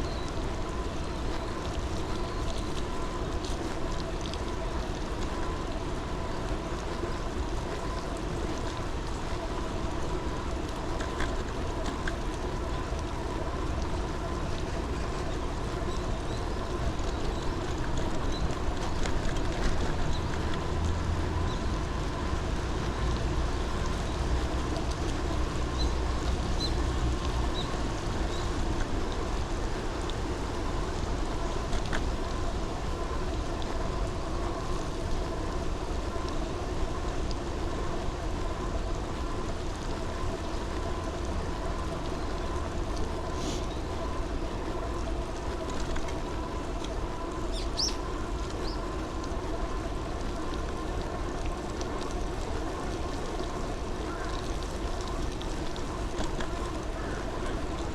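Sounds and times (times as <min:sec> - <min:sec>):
wind and road noise: 0:00.0 - 0:57.9
vehicle motor hum: 0:12.8 - 0:29.3.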